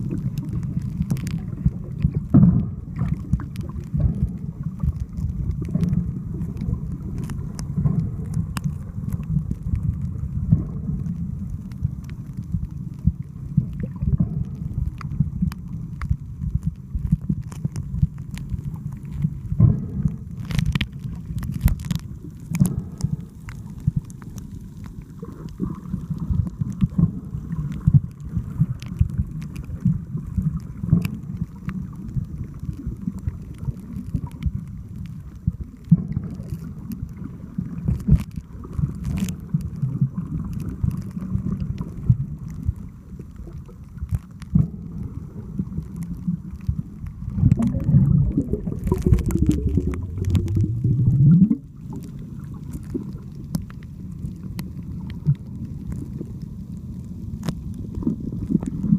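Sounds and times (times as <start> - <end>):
sea water rumbling and sloshing: 0.0 - 58.9
small clicks and knocks: 13.7 - 25.8.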